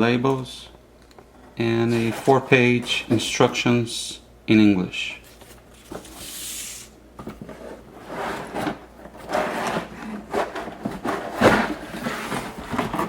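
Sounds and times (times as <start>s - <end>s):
cardboard and plastic toy handled: 5.2s - 7.8s.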